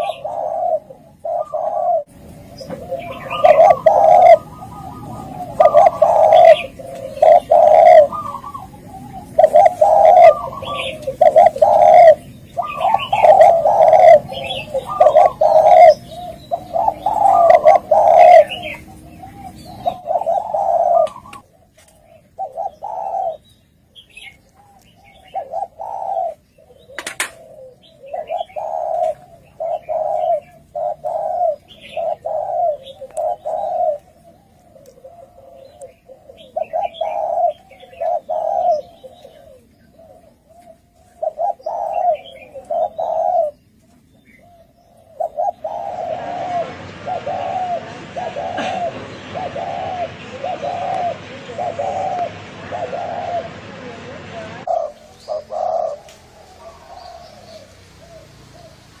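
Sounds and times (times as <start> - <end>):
doves cooing: 0.0 - 59.0
steady hiss: 45.3 - 59.0.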